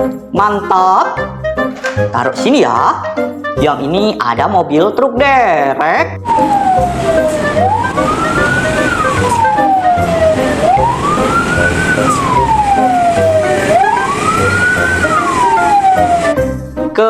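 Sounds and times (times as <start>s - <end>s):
toy electronic siren wailing: 6.2s - 16.4s.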